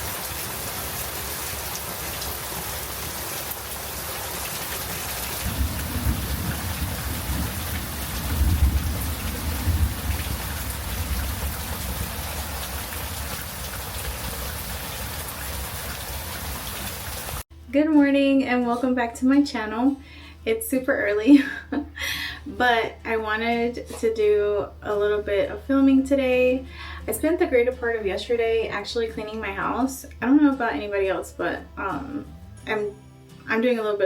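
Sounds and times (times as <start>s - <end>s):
steady rain: 0.0s - 17.4s
thunder rumble: 5.3s - 16.6s.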